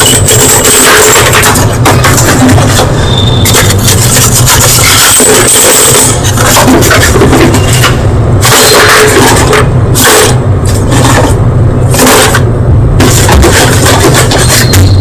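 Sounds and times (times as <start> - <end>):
steady low hum: 0.0 - 15.0
chalk crunching: 3.5 - 11.4, 13.0 - 14.8.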